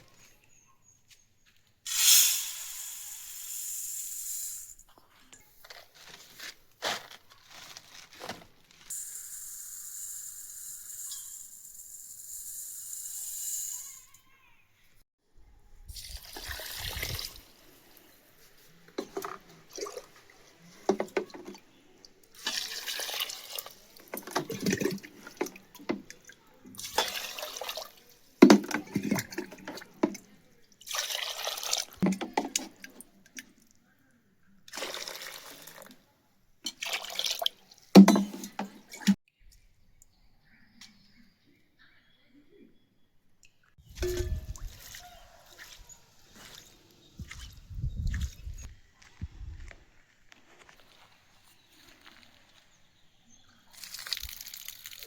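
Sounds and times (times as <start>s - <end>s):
water pouring: 15.9s - 17.8s, 22.4s - 30.2s, 30.8s - 33.0s, 34.7s - 36.0s, 36.7s - 39.2s, 53.7s - 55.0s.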